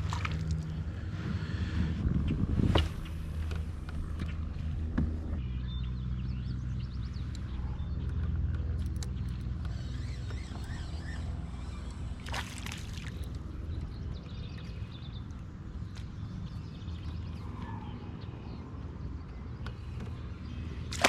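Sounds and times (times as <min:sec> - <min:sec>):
water sloshing against a hull: 0:00.0 - 0:05.4, 0:08.9 - 0:14.9
low rumble: 0:00.0 - 0:19.5
birds chirping: 0:00.6 - 0:21.0.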